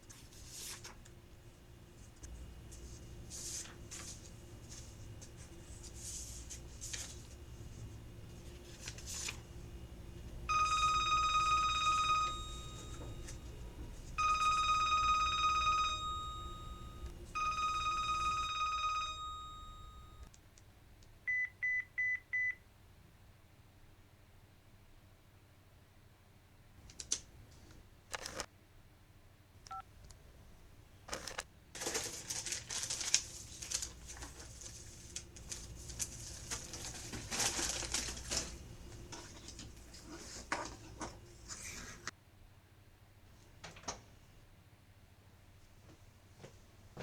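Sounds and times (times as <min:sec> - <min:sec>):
telephone ringing: 0:09.6 - 0:20.3.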